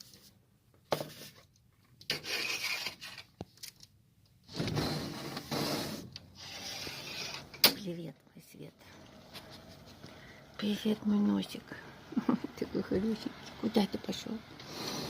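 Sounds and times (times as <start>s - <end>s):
rubbing and scraping: 2.1s - 3.4s, 4.5s - 7.6s, 9.0s - 10.1s.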